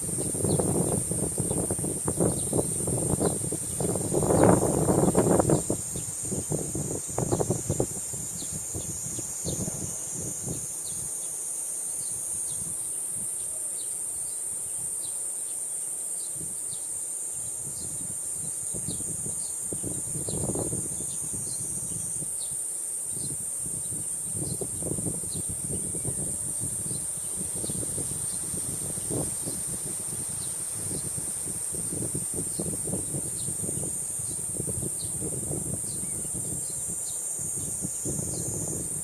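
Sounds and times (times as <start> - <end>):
wind buffeting microphone: 0.0 - 10.7, 17.6 - 22.2, 23.2 - 39.0
cicadas droning: 0.0 - 39.0.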